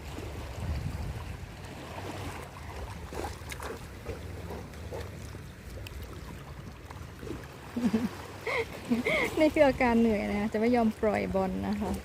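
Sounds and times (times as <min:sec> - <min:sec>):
wind buffeting microphone: 0:00.0 - 0:05.1.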